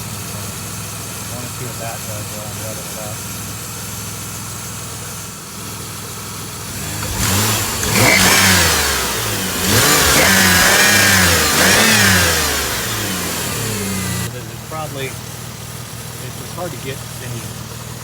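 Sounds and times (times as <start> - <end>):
car engine idling and revving: 0.0 - 18.0
high-pitched engine whine: 6.7 - 14.3.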